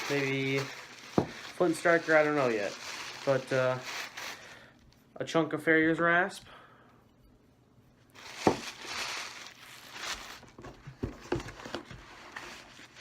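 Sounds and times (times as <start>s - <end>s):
paper packaging rustling: 0.0s - 4.7s, 8.2s - 13.0s.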